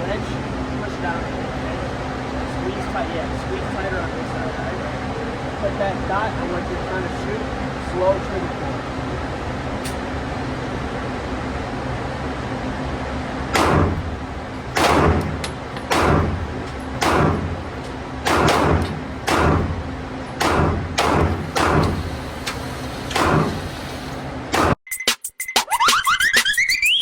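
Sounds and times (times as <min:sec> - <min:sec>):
ventilation hum: 0:00.0 - 0:24.8
gunshots with echo: 0:13.5 - 0:22.2, 0:23.1 - 0:23.7, 0:24.5 - 0:24.8.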